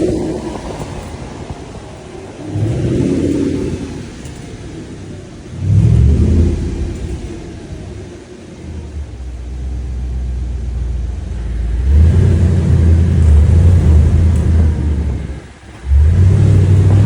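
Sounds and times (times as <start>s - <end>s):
car engine droning rumble: 0.0s - 17.0s.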